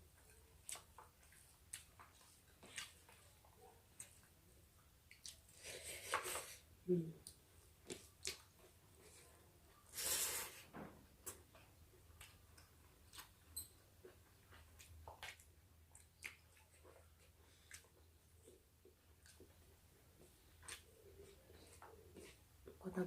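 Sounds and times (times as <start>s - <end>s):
chewing clicks and smacks: 7.2s - 8.8s, 12.2s - 19.6s.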